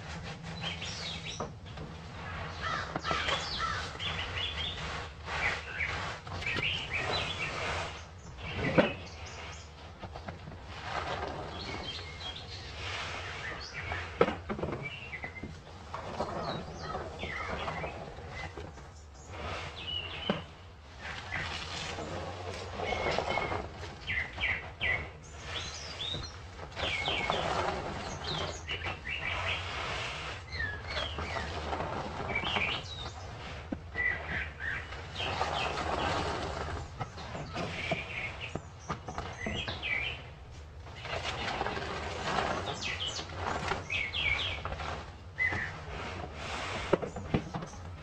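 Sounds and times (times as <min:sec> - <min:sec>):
birds chirping: 0:00.4 - 0:10.0, 0:11.0 - 0:48.0.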